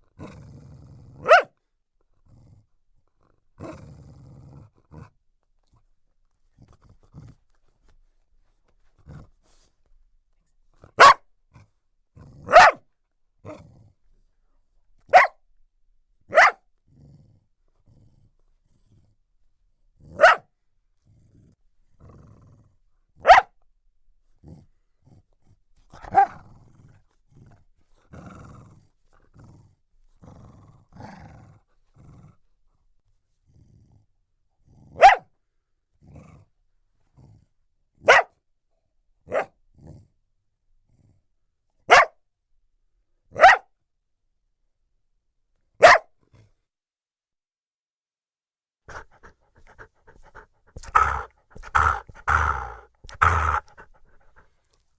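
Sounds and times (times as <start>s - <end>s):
dog growling: 0.1s - 1.4s, 2.2s - 5.2s, 13.4s - 14.0s, 16.9s - 19.1s, 21.0s - 22.8s, 24.4s - 32.5s, 33.4s - 35.0s, 36.0s - 36.5s, 48.9s - 54.8s
dog barking: 1.2s - 1.5s, 11.0s - 11.2s, 12.5s - 12.8s, 15.1s - 15.4s, 16.3s - 16.6s, 20.1s - 20.5s, 23.2s - 23.5s, 26.0s - 26.4s, 35.0s - 35.3s, 38.0s - 38.4s, 39.3s - 39.5s, 41.9s - 42.2s, 43.3s - 43.7s, 45.8s - 46.1s, 48.9s - 54.4s.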